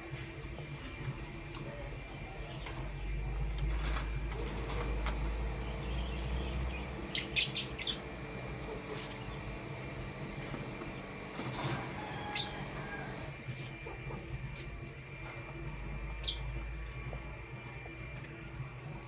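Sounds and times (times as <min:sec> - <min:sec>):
lovebird chirping: 0:05.7 - 0:08.1, 0:16.1 - 0:16.6.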